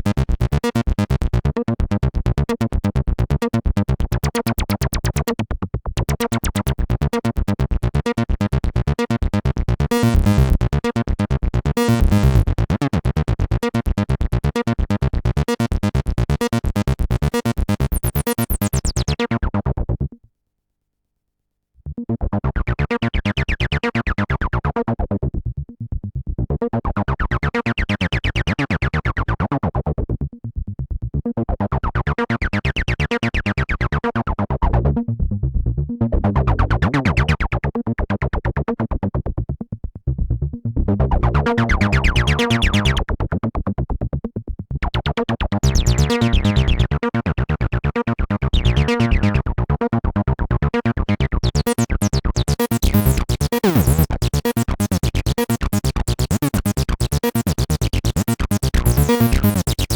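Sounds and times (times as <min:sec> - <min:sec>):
acid synth bassline: 0:00.0 - 0:01.6, 0:02.2 - 0:05.4, 0:06.0 - 0:19.5, 0:35.6 - 0:37.5, 0:40.4 - 0:43.1, 0:44.9 - 0:49.8, 0:50.5 - 0:59.9.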